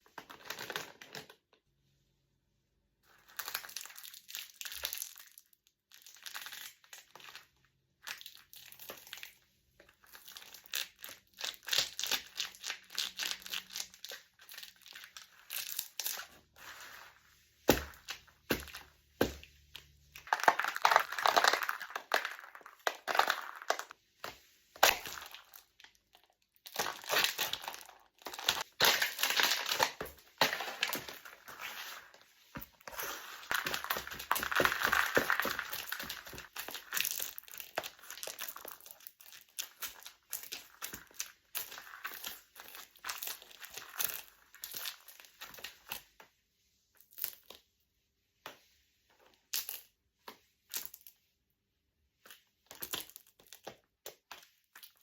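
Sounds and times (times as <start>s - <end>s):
crunching and crinkling: 10.0s - 46.0s.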